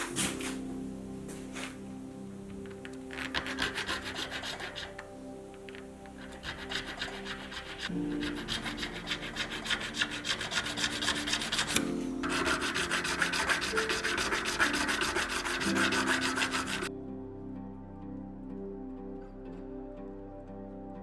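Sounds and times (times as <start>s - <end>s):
soft background music: 0.0s - 21.0s
hand file rasping on metal: 3.1s - 5.1s, 6.2s - 16.9s.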